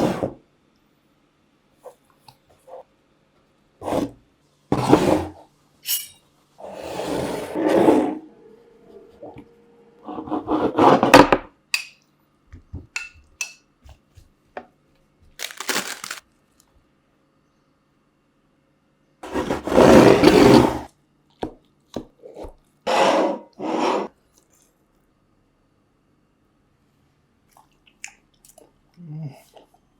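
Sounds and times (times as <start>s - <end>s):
crisp food crunching: 15.4s - 16.7s.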